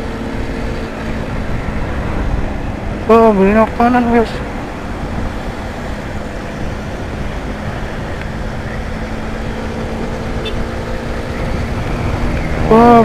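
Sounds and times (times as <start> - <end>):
motorcycle engine hum: 0.0 - 13.0
wind rush on microphone: 0.0 - 13.0.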